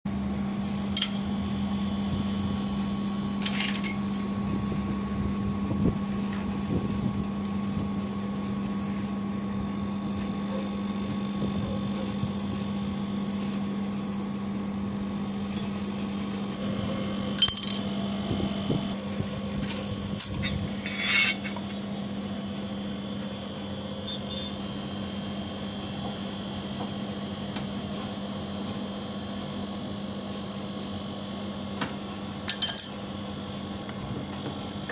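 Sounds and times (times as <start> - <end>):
steady low hum: 0.1 - 34.9
metal tools clinking: 32.5 - 33.0.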